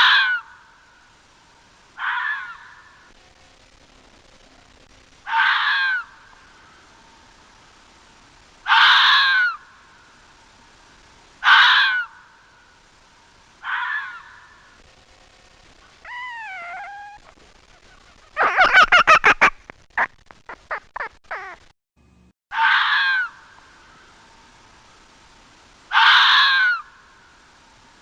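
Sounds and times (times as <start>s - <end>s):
fox screaming calls: 0.0s - 0.6s, 2.0s - 3.1s, 5.2s - 6.4s, 8.6s - 9.7s, 11.4s - 12.3s, 13.6s - 14.8s, 16.0s - 18.9s, 21.0s - 21.6s, 22.5s - 23.4s, 25.9s - 27.0s.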